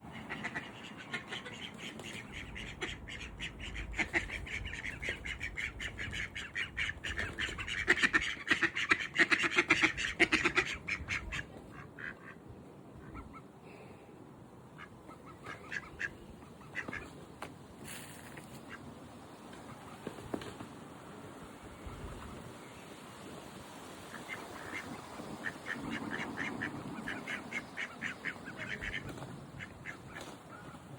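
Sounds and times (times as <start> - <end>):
ducks quacking: 0.0 - 13.6, 14.7 - 17.2, 17.9 - 19.0, 23.8 - 30.9.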